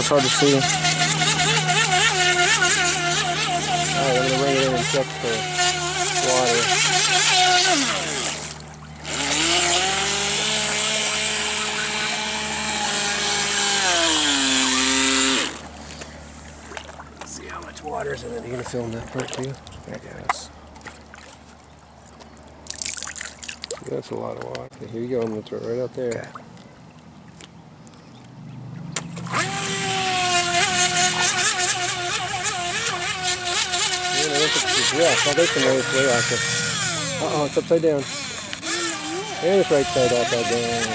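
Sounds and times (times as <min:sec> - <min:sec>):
model boat motor whining: 0:00.0 - 0:19.4, 0:29.0 - 0:40.9.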